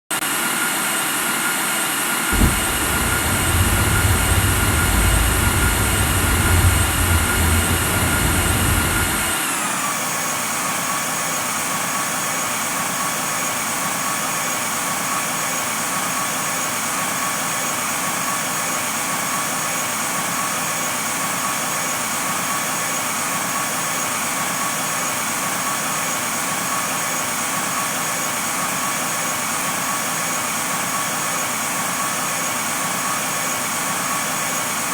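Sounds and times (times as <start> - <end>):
jet engine whine: 0.4 - 10.4
heavy low rumble: 2.4 - 9.3.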